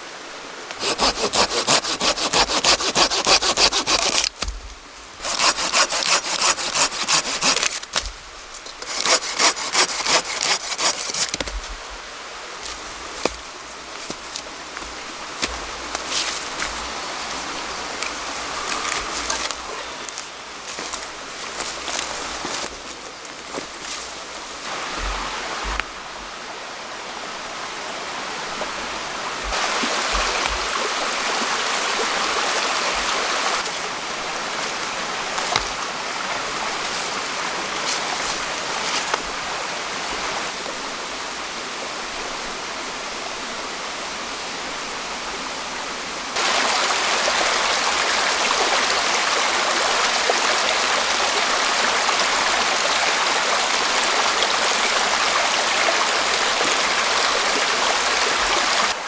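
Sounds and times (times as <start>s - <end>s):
stream flowing: 0.0s - 59.0s.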